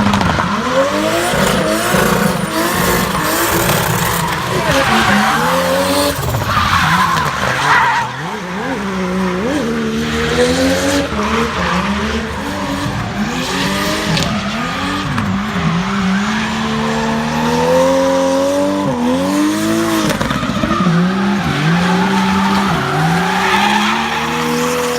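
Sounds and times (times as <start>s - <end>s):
car engine revving: 0.0s - 24.9s
tyres squealing: 0.6s - 8.8s, 20.2s - 24.9s.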